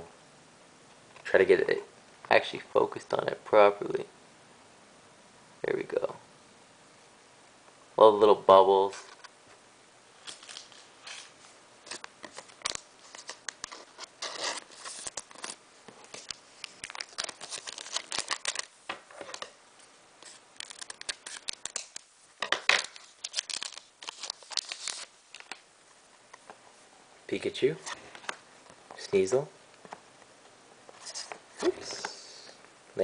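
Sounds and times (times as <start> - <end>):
card pack being torn open: 10.2 - 11.3, 11.9 - 19.5, 20.2 - 25.6
cards being handled: 10.2 - 25.6.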